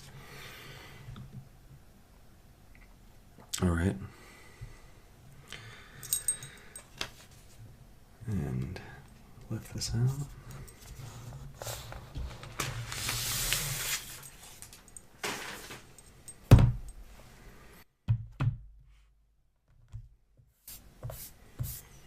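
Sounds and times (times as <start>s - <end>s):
cardboard box sliding and rustling: 11.1s - 14.2s
thump: 16.5s - 16.8s.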